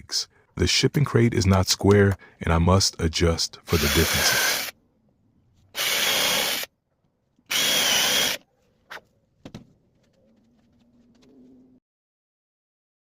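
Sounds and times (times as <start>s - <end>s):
power drill whining: 3.7s - 4.7s, 5.7s - 6.7s, 7.5s - 8.4s.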